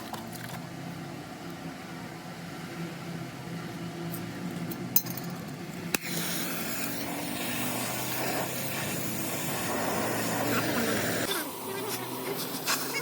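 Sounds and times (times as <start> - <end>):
steady low hum: 0.0 - 13.0
metal tools clinking: 4.7 - 5.6
hissing rush of noise: 6.0 - 13.0.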